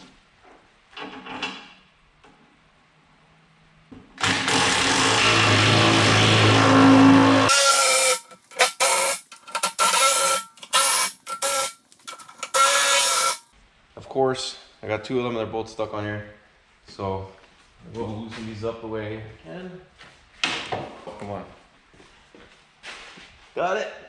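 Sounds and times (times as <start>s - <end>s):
power tool on bolts: 4.2s - 13.4s.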